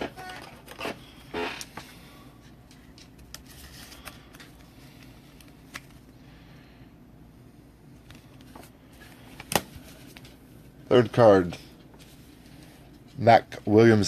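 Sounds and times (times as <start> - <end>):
card packaging rustling: 2.8 - 6.1.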